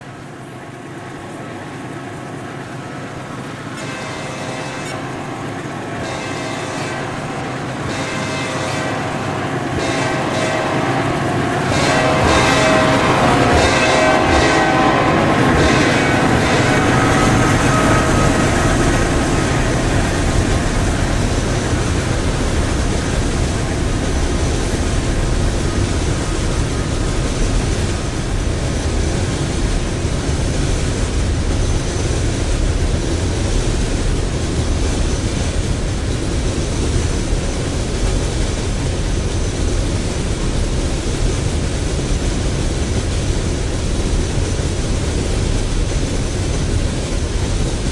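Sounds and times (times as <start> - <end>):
train wheels rumbling on rail: 0.0 - 47.9
pitched tones: 3.1 - 28.8.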